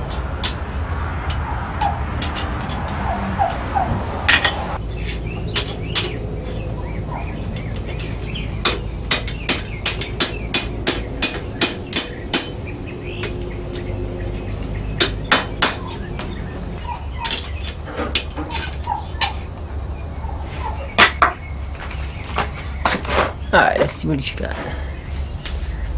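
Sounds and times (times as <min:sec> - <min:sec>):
steady low rumble: 0:00.0 - 0:20.9, 0:24.5 - 0:25.9
hammer striking steel on anvil: 0:08.6 - 0:12.6, 0:15.0 - 0:16.1.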